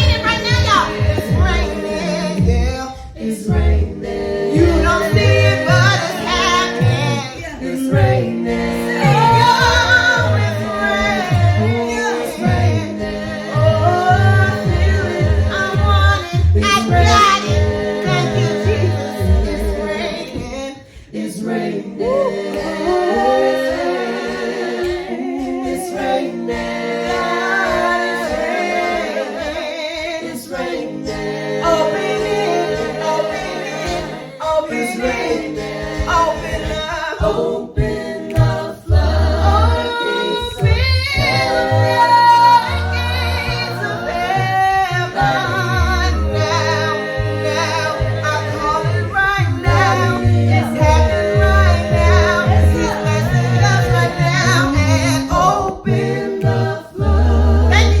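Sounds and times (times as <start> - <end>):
woman singing lead: 0.0 - 3.8, 4.5 - 8.3, 8.9 - 13.0, 13.6 - 23.4
sung bass line: 0.0 - 20.6, 35.2 - 58.0
a cappella choir singing: 0.0 - 58.0.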